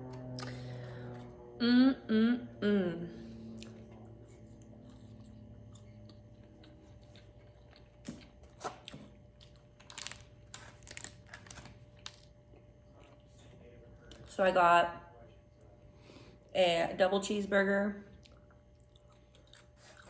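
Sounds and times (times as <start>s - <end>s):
low steady hum: 0.0s - 20.0s
paper wrappers crinkling: 9.8s - 12.3s.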